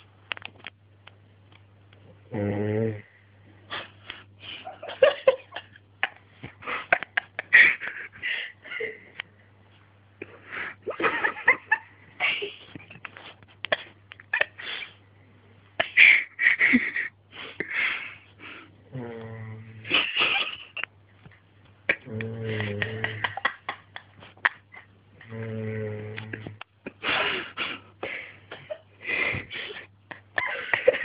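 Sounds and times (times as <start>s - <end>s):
steady low hum: 0.0s - 31.0s
man snoring: 2.3s - 3.1s, 18.9s - 19.9s, 22.0s - 23.3s, 25.2s - 26.6s.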